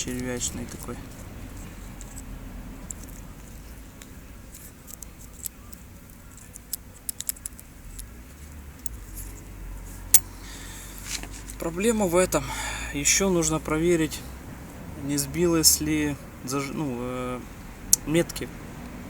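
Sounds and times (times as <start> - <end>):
low steady hum: 0.0 - 19.0
light metallic clicks and taps: 2.8 - 8.1.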